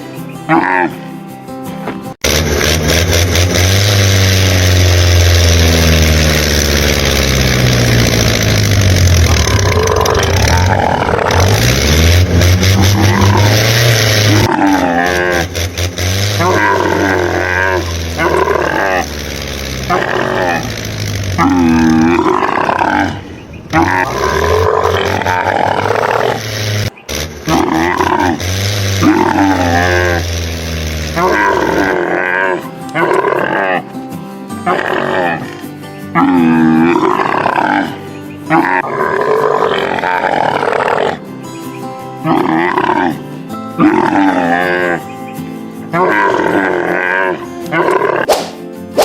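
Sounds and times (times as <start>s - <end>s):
engine idling: 2.2s - 14.5s, 15.1s - 24.6s, 28.4s - 31.8s
cattle mooing: 3.8s - 41.4s, 42.2s - 48.3s.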